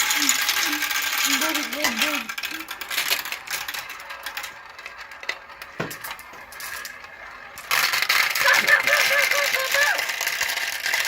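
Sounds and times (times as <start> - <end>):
marbles clattering through plastic run: 0.0 - 11.0
marble knock: 5.7 - 6.4.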